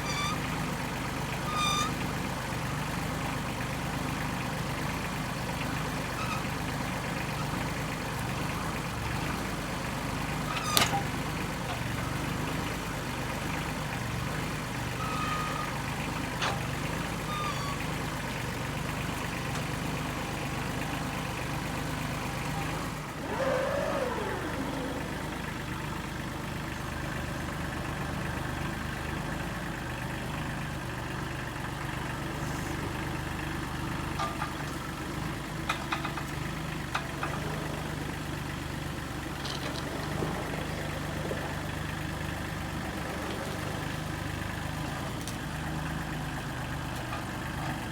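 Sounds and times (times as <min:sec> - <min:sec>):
squeal falling in pitch: 0:00.0 - 0:00.6, 0:01.4 - 0:02.0, 0:15.0 - 0:15.8, 0:17.2 - 0:17.9
engine idling: 0:00.0 - 0:47.9.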